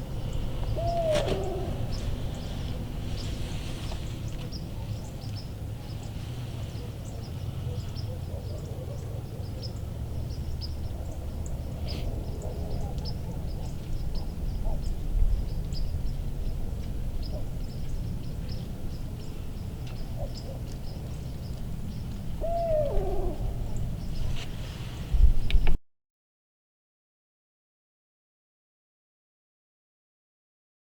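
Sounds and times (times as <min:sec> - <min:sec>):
bird hooting: 0:00.0 - 0:05.1, 0:22.4 - 0:24.1
birds chirping: 0:00.0 - 0:25.1.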